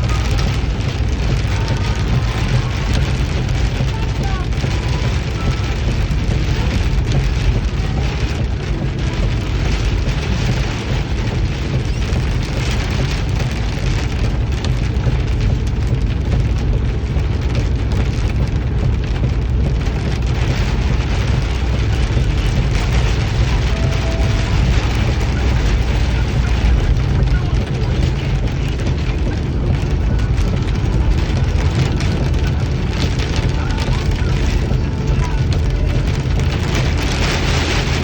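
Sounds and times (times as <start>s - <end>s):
heavy rain: 0.0s - 38.0s.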